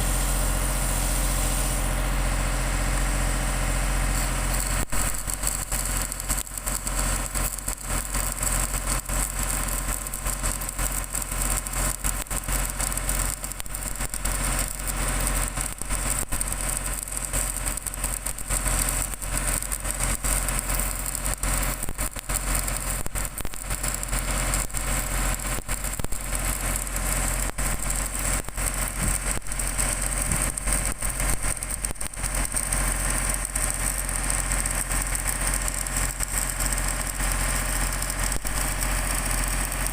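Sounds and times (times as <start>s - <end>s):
welding arc crackling sizzle: 0.0s - 39.9s.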